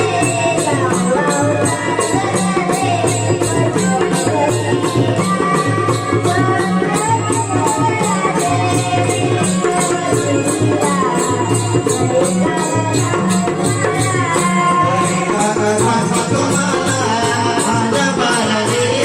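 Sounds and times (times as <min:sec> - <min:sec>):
drum beat: 0:00.0 - 0:19.0.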